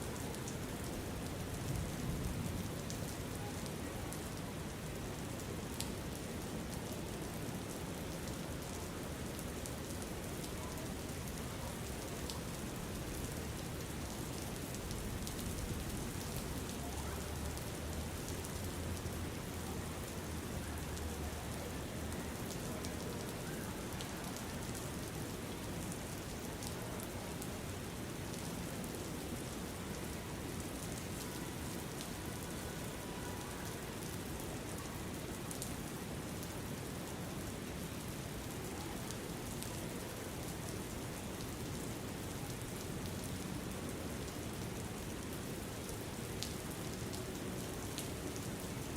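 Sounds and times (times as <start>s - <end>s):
steady rain falling: 0.0s - 48.9s.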